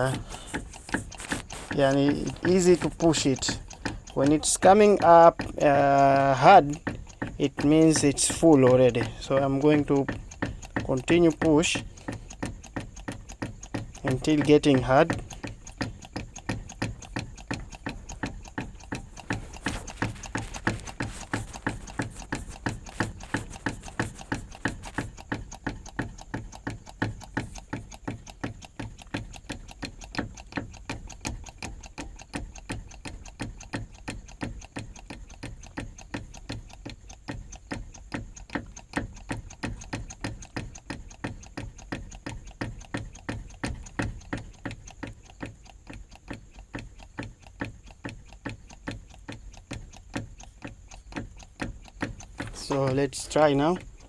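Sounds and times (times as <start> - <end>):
hand primer pump clicking: 0.0 - 54.0.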